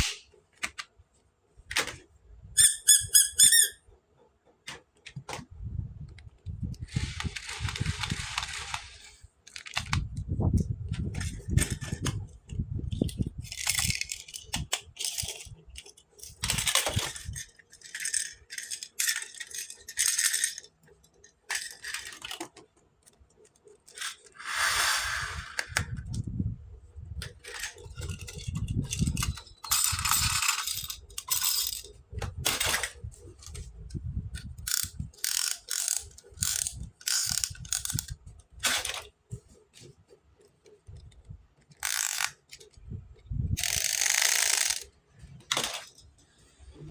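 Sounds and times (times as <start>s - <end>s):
plastic toy pieces rattling: 6.8s - 10.0s, 10.9s - 22.7s, 23.4s - 24.8s, 27.2s - 33.6s, 34.4s - 39.1s, 41.7s - 42.8s, 43.6s - 46.1s.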